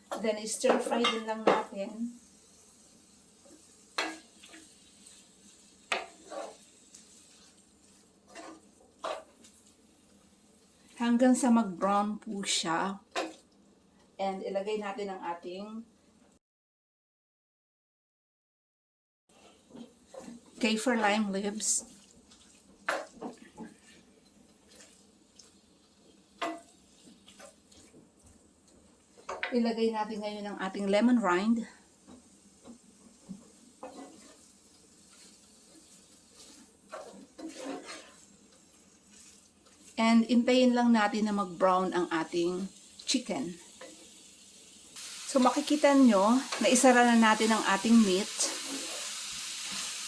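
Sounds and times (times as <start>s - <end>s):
faint sizzle: 0.0s - 16.4s, 19.3s - 50.0s
utensil scraping and knocking pan: 5.9s - 6.6s, 8.3s - 9.5s, 32.1s - 40.0s.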